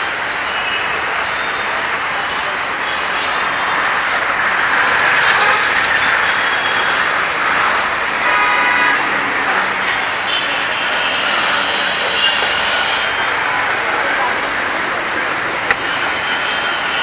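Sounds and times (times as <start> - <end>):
passing road traffic: 0.0 - 17.0
vehicle horn honking: 4.9 - 13.7.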